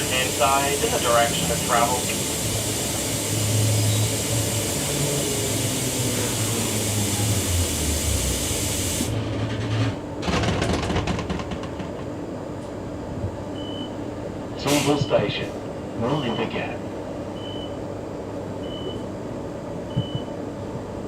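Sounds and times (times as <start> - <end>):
steady hiss: 0.0 - 8.0
train motor hum: 0.0 - 10.2
knocks and clatter: 9.3 - 12.2.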